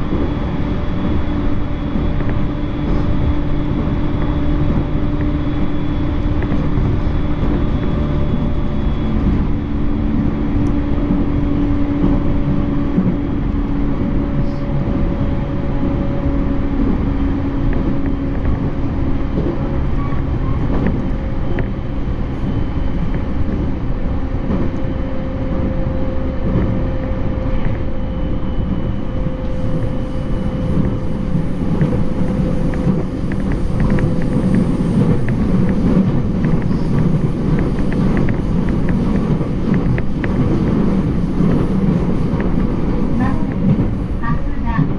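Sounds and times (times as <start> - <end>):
train wheels rumbling on rail: 0.0 - 44.9
faint whining tones: 19.4 - 44.7.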